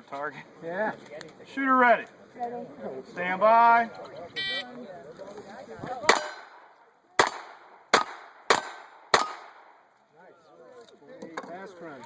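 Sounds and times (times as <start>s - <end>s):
gunshots: 6.1s - 9.8s.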